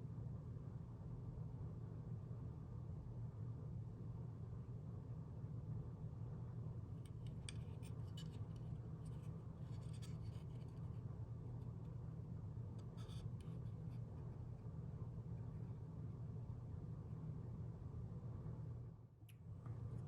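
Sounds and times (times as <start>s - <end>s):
steady low hum: 0.0s - 20.0s
faint scratching and clicking: 7.0s - 12.1s, 12.7s - 15.8s.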